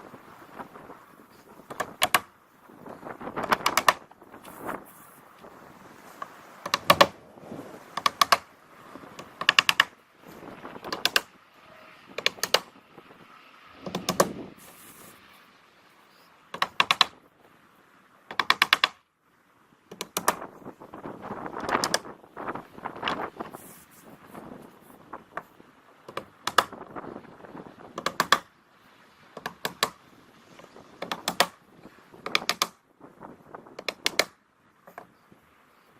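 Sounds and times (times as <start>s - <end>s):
nails being driven into wood: 1.6s - 2.3s, 3.4s - 4.6s, 6.6s - 7.2s, 8.0s - 8.5s, 9.2s - 10.0s, 10.8s - 11.3s, 12.2s - 12.7s, 13.8s - 14.4s, 16.5s - 17.2s, 18.3s - 19.0s, 19.9s - 20.4s, 21.6s - 22.1s, 26.1s - 26.8s, 28.0s - 28.5s, 29.4s - 30.0s, 31.0s - 31.6s, 32.2s - 32.8s, 33.8s - 35.0s.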